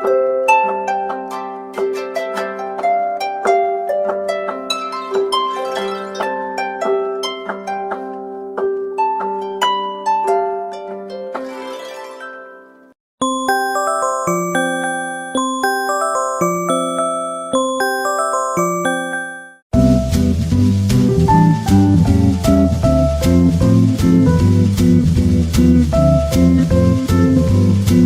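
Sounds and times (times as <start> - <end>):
harp-like alarm tone melody: 13.2 - 19.6.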